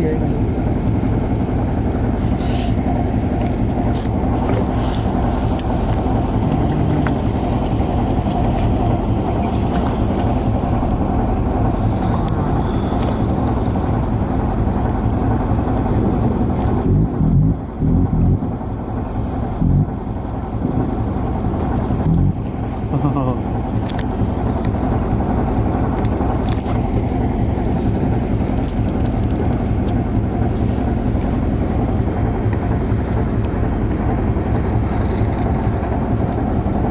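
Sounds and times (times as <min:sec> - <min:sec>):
boat engine running: 0:00.0 - 0:36.9
deep burp-like pulses: 0:16.8 - 0:18.6, 0:19.6 - 0:20.0, 0:22.0 - 0:23.5.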